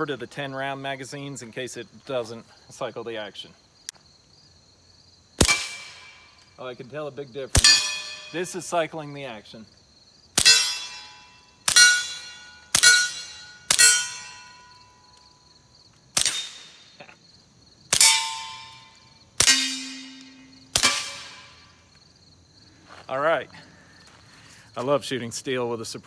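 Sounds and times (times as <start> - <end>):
suppressed pistol shots: 5.4 - 6.2, 16.2 - 16.8, 19.4 - 21.5
steel target clanging: 5.4 - 6.4, 7.6 - 8.9, 10.4 - 15.0, 16.2 - 16.9, 17.9 - 21.7.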